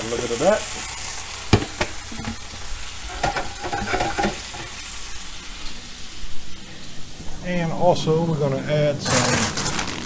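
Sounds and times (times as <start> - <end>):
stock sizzling in frying pan: 0.0 - 8.2
utensil knocks: 1.5 - 2.4
utensil scraping pan bottom: 1.5 - 4.8.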